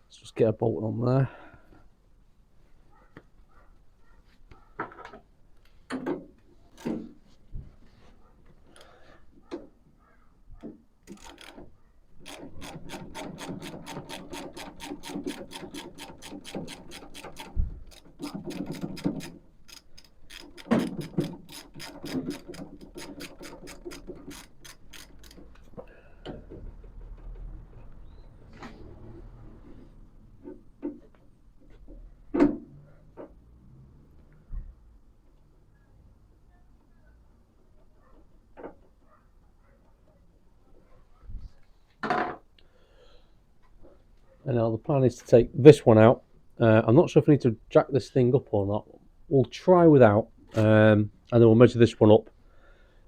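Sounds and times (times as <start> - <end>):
ratchet wrench clicking: 11.1 - 11.6, 12.2 - 25.6.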